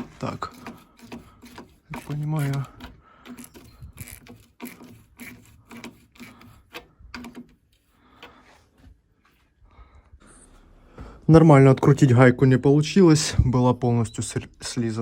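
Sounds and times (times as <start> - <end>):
hand tool scraping metal nut: 0.0 - 8.3.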